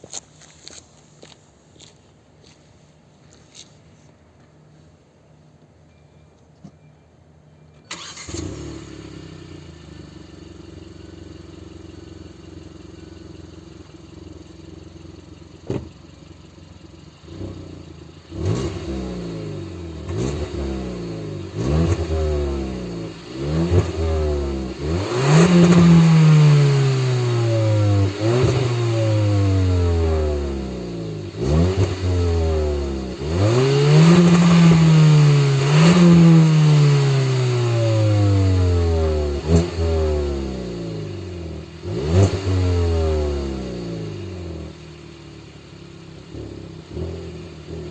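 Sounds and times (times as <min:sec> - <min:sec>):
car engine idling and revving: 0:07.4 - 0:47.9.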